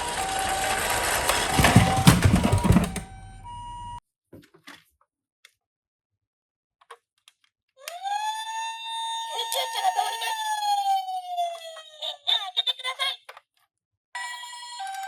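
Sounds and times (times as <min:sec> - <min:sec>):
toy siren wailing: 0:14.2 - 0:15.0.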